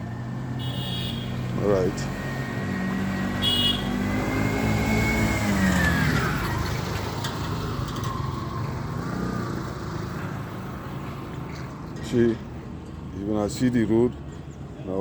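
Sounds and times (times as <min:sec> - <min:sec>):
vehicle engine passing by: 0:01.4 - 0:12.6.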